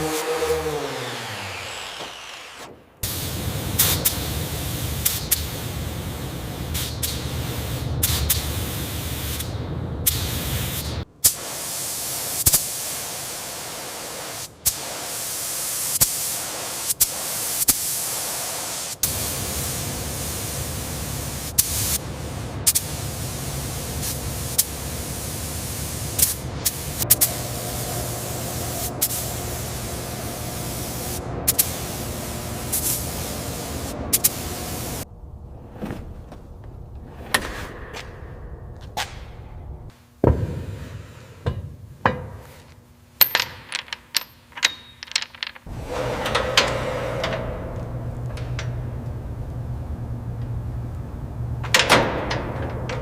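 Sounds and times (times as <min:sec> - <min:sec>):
steady hissing: 0:00.0 - 0:35.1
low hum: 0:26.5 - 0:39.9, 0:45.7 - 0:53.0.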